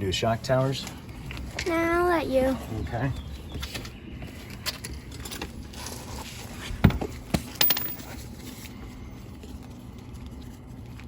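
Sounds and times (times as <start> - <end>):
clinks of tools and metal parts: 7.4 - 8.2.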